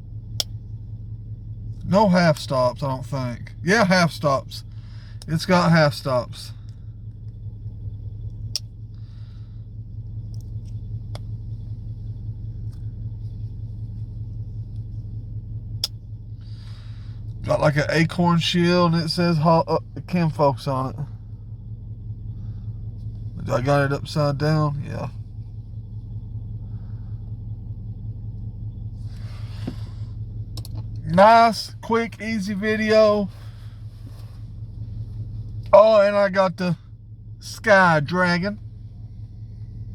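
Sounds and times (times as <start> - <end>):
low background rumble: 0.0 - 39.9
low hum: 0.0 - 39.9
sharp clicks: 8.3 - 8.8, 30.5 - 31.0.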